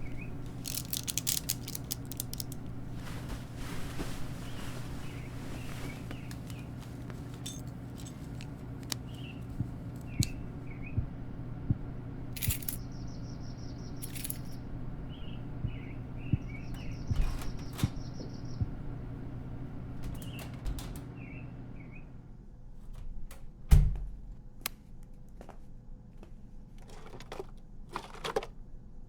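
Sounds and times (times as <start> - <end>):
steady low hum: 0.0 - 26.8.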